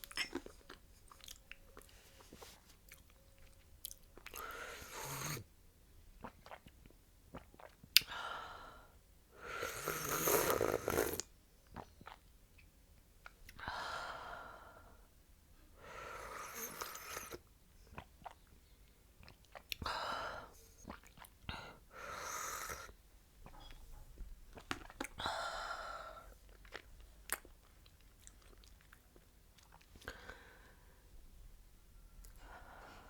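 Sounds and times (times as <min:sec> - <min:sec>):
chewing with wet mouth clicks: 0:00.0 - 0:04.4, 0:17.9 - 0:19.8, 0:24.5 - 0:25.2, 0:26.5 - 0:30.1.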